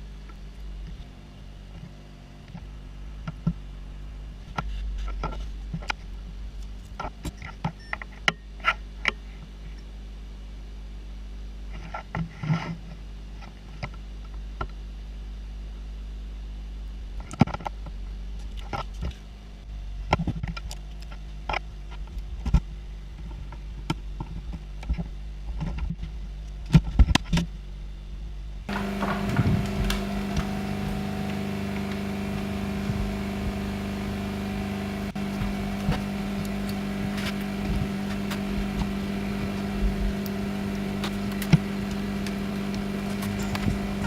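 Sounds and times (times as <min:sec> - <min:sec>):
steady low hum: 0:14.3 - 0:44.0.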